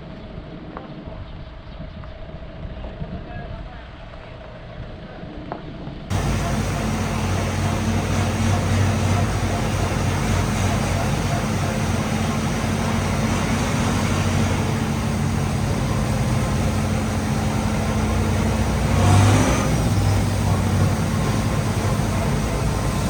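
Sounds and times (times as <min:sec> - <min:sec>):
tractor engine running: 0:06.1 - 0:23.0.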